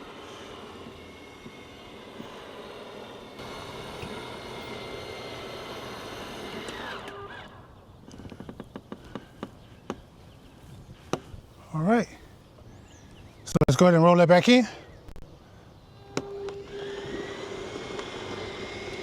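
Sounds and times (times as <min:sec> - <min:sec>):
electric motor running: 0:00.0 - 0:07.7, 0:16.5 - 0:19.0.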